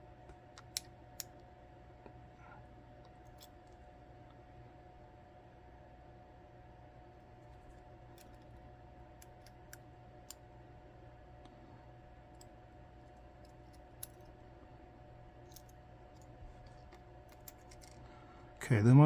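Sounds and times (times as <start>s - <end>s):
steady low hum: 0.0s - 19.0s
small metal parts clicking: 17.3s - 18.0s.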